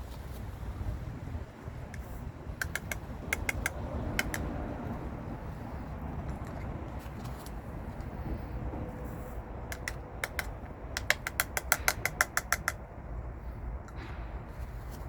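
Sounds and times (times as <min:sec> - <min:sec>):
steady low rumble: 0:00.0 - 0:15.0
sharp ringing clicks: 0:02.6 - 0:04.5.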